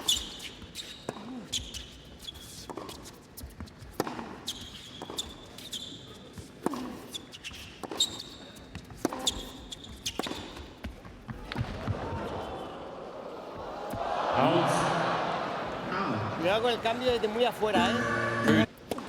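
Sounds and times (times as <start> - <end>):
shoes squeaking on court: 0.0 - 11.6
tennis ball struck and bouncing: 9.0 - 9.4.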